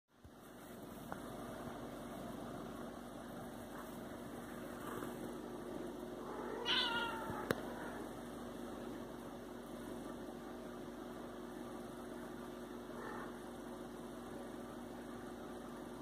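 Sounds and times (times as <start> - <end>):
cat meowing: 6.3 - 8.0.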